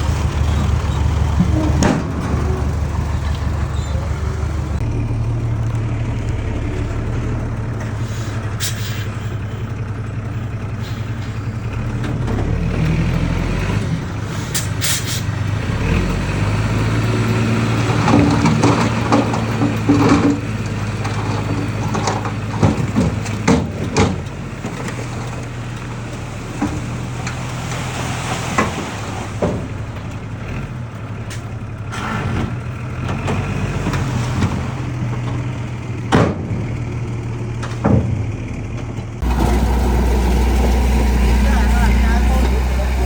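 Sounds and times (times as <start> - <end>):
diesel engine running: 0.0 - 43.0
metal clanks and knocks: 0.1 - 4.8, 17.9 - 27.9, 32.2 - 41.2.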